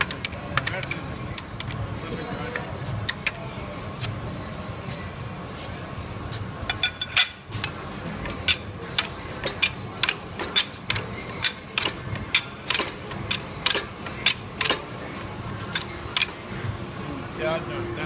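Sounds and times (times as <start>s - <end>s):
metallic mechanism clicks: 0.0s - 1.8s, 6.7s - 16.4s.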